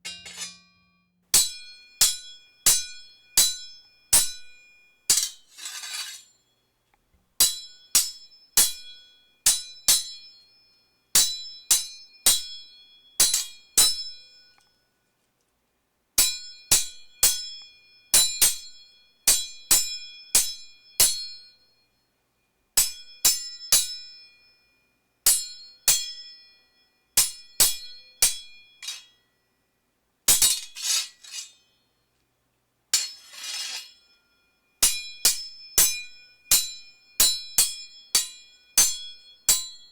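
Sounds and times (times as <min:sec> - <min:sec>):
metal blades clashing: 0:00.0 - 0:00.8, 0:27.2 - 0:29.1, 0:30.3 - 0:31.6, 0:33.0 - 0:34.0
noisy blade scraping: 0:05.5 - 0:06.2, 0:30.7 - 0:31.6, 0:33.0 - 0:33.9.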